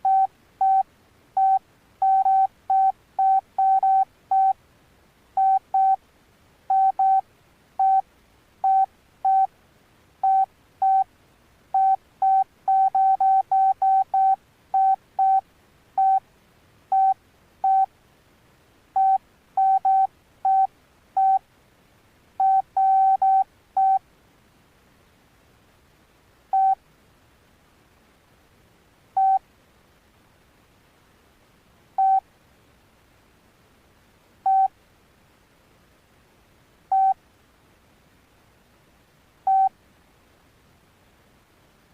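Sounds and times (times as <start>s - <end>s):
phone keypad beeping: 0.0s - 0.8s, 1.4s - 4.6s, 5.4s - 6.0s, 6.7s - 7.2s, 7.8s - 8.0s, 8.6s - 9.5s, 10.2s - 11.0s, 11.8s - 15.4s, 16.0s - 16.2s, 16.9s - 17.9s, 19.0s - 21.4s, 22.4s - 24.0s, 26.6s - 26.8s, 29.2s - 29.4s, 32.0s - 32.2s, 34.5s - 34.7s, 36.9s - 37.2s, 39.5s - 39.7s.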